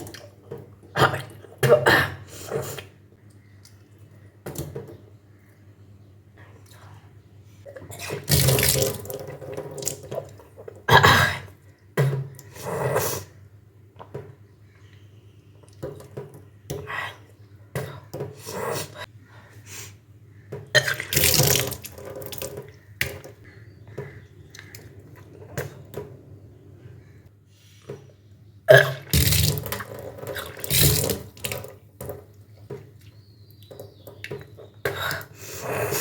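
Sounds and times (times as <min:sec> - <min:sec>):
person vomiting water: 0:00.9 - 0:03.0, 0:07.7 - 0:13.4, 0:20.7 - 0:22.6, 0:28.7 - 0:31.6.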